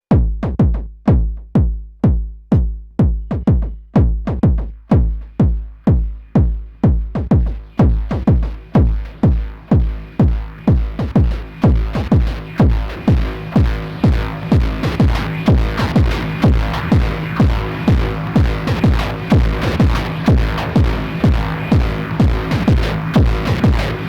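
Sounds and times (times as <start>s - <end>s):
techno kick drum: 0.0s - 24.0s
hissing noise layer: 9.6s - 24.0s.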